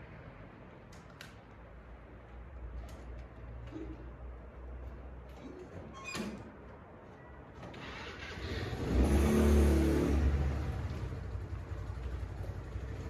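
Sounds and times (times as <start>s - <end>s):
vehicle passing by: 8.2s - 13.0s.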